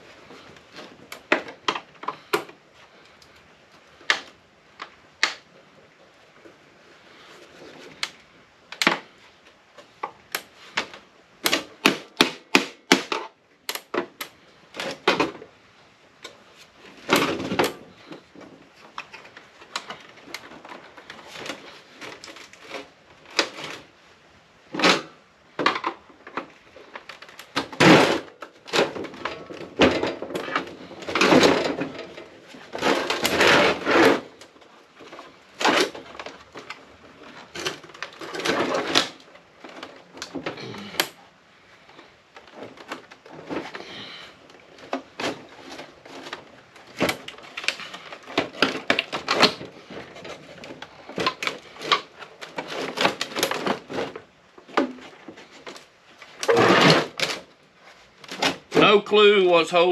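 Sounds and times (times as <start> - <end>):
scraping: 26.9 - 41.1.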